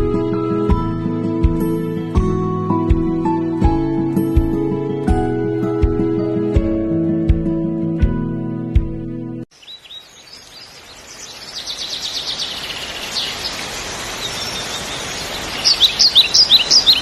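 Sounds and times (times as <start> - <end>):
background hiss: 9.5 - 17.0
small birds chirping and trilling: 9.5 - 17.0.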